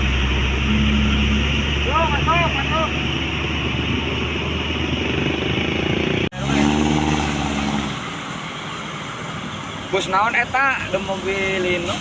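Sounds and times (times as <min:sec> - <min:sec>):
deep engine hum: 0:00.0 - 0:08.6
vehicle engine running: 0:00.0 - 0:08.7
road traffic noise: 0:00.0 - 0:12.0.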